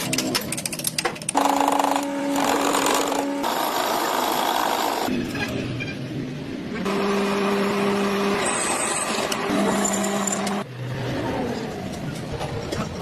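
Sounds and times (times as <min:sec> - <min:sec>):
power tool humming: 0:01.4 - 0:05.1, 0:06.9 - 0:10.6.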